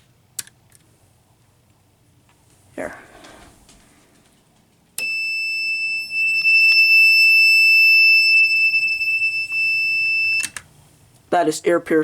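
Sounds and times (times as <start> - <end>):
piezo sounder high tone: 5.0 - 10.6.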